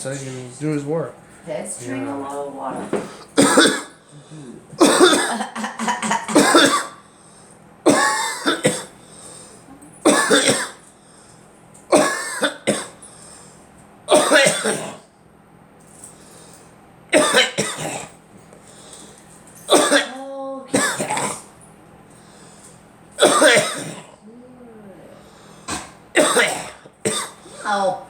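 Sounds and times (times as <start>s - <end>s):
person coughing harshly: 3.0s - 7.0s, 7.9s - 9.0s, 10.0s - 10.8s, 11.9s - 13.0s, 14.1s - 15.0s, 17.1s - 18.2s, 19.7s - 21.5s, 23.2s - 24.2s, 25.7s - 27.8s.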